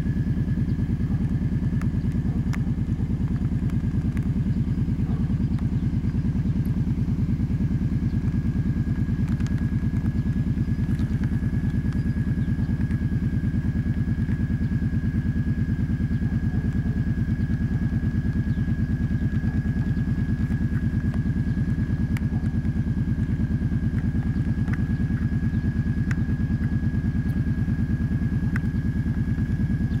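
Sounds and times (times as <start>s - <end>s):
atv engine idling: 0.0s - 30.0s
light tick: 26.0s - 27.4s, 28.4s - 29.2s.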